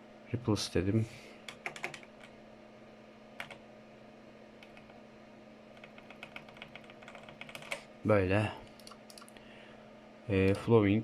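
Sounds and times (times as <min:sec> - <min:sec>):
mechanical keyboard clacks: 0:01.5 - 0:02.1, 0:05.8 - 0:07.8.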